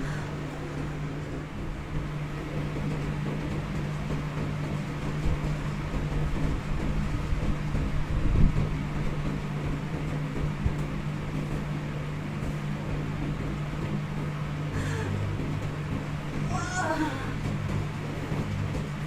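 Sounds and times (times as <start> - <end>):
low mechanical hum: 0.0 - 19.0.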